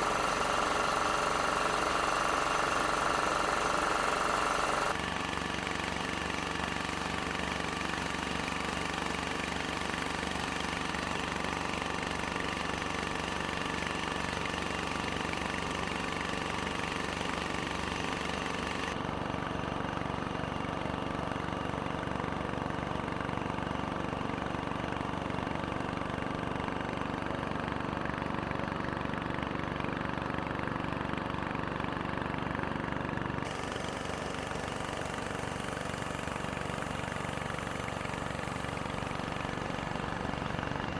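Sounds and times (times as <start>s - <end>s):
motor boat engine running: 0.0s - 40.9s.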